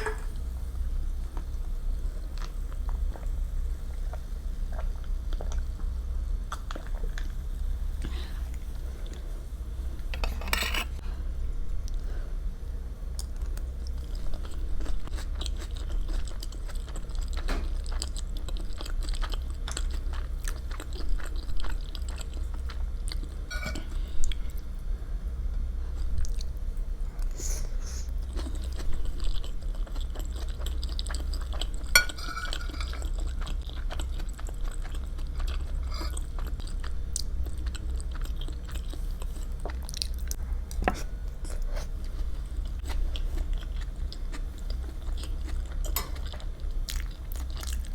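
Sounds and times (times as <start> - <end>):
chewing food: 2.2 - 7.4, 13.2 - 24.6, 28.2 - 47.9.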